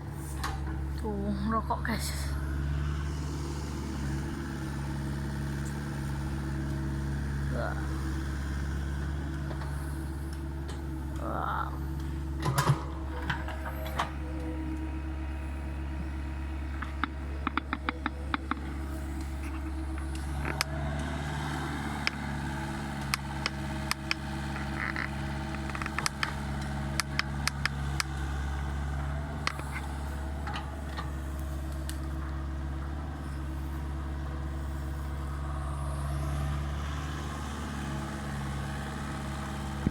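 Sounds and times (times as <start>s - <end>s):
diesel engine running: 0.0s - 39.9s
sharp clicks and cracks: 23.0s - 28.1s.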